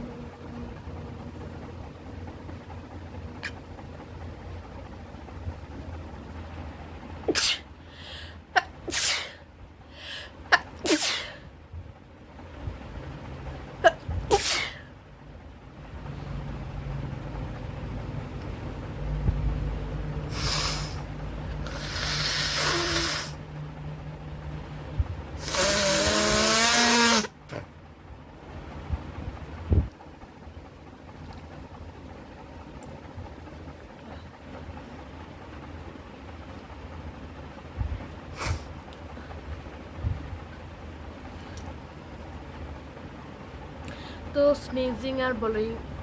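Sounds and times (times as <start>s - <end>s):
woman sneezing: 7.3s - 7.6s, 10.8s - 11.4s, 13.8s - 14.8s.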